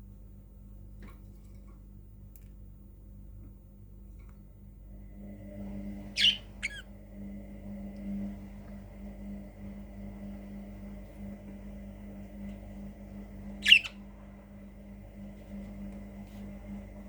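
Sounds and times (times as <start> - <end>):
steady background hum: 0.0 - 17.0
budgerigar squawk: 6.2 - 6.8, 13.6 - 13.9.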